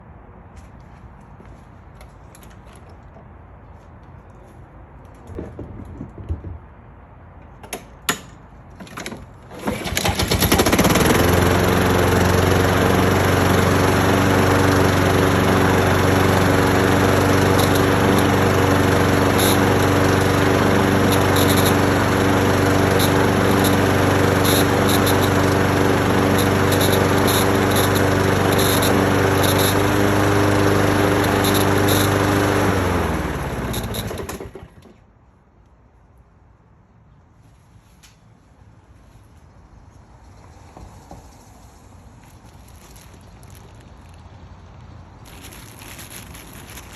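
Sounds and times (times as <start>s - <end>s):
lawn mower engine running: 8.8s - 35.0s.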